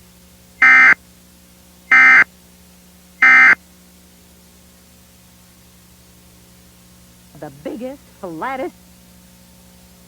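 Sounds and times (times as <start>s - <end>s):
faint steady hum: 0.0s - 10.0s
digital data tone bursts: 0.6s - 1.0s, 1.9s - 2.2s, 3.2s - 3.6s.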